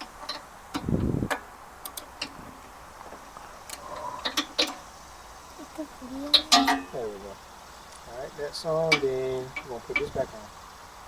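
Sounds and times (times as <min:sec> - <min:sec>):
metallic clicks and taps: 0:00.3 - 0:02.4.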